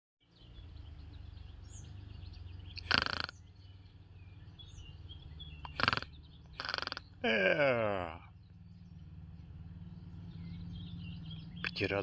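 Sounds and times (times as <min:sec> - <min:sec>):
faint bird chirping: 0:00.2 - 0:12.0
nestlings raspy rattles: 0:00.9 - 0:07.3.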